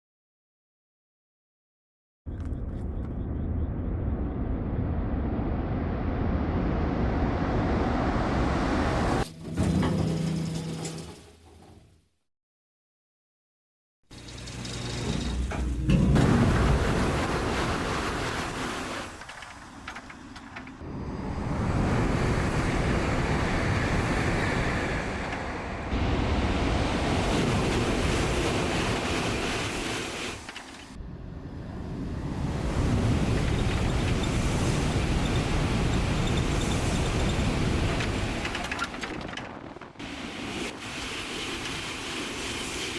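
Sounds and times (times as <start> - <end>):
wind buffeting microphone: 20.8 - 30.0, 31.0 - 38.5
train approaching with rushing noise: 20.8 - 38.4.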